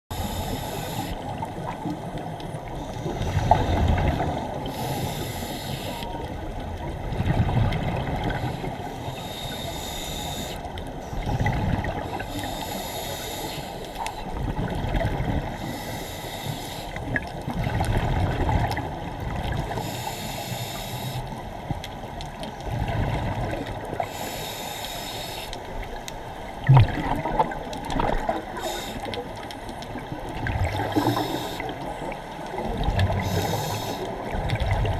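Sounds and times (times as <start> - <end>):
diver breathing through regulator: 0.1 - 1.2, 2.8 - 6.1, 8.3 - 14.3, 15.6 - 17.0, 19.7 - 21.4, 24.0 - 25.6, 28.4 - 29.3, 30.8 - 31.8, 33.1 - 34.2
exhaled bubbles gurgling: 0.1 - 8.9, 11.2 - 13.0, 14.1 - 15.8, 17.0 - 19.9, 21.4 - 24.3, 25.7 - 34.9
rush of water: 17.0 - 20.0, 21.8 - 34.9.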